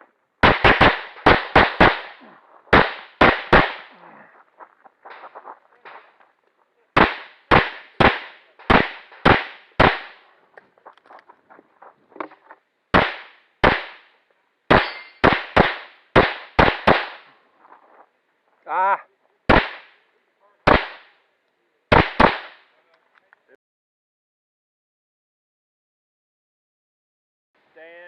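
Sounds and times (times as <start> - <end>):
pistol shots: 0.4 - 4.1, 6.9 - 10.3, 12.9 - 17.3, 19.5 - 20.0, 20.6 - 21.2, 21.9 - 22.7.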